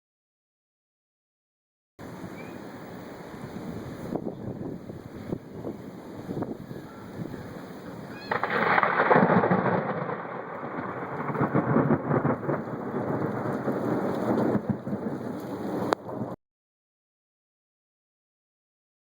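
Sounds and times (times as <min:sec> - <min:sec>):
rain hiss: 0:02.0 - 0:16.4
rolling thunder: 0:04.1 - 0:16.4.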